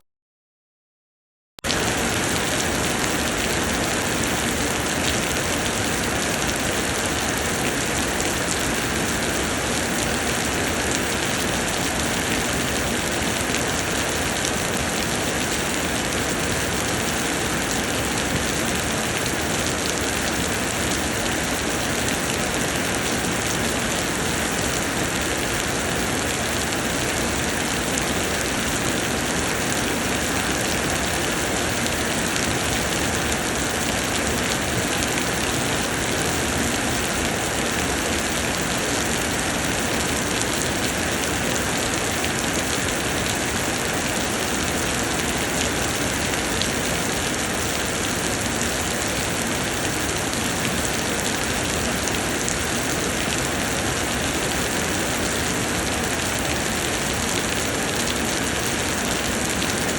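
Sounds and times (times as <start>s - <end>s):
heavy rain pattering: 1.6s - 59.9s.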